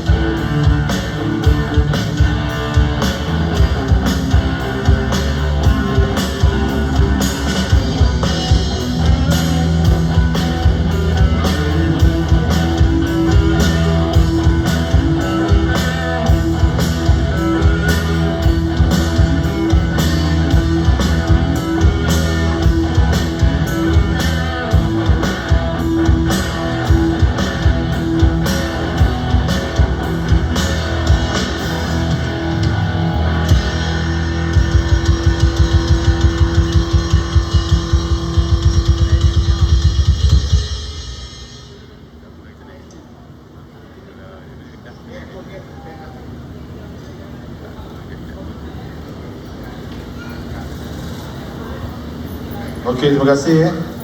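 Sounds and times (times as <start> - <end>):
electric guitar: 0.0 - 41.8
drum kit playing: 0.0 - 42.2.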